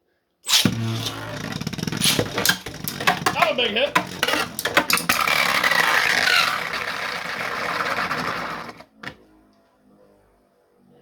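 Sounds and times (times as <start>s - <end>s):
spinning tops whirring and scraping: 0.5s - 9.2s.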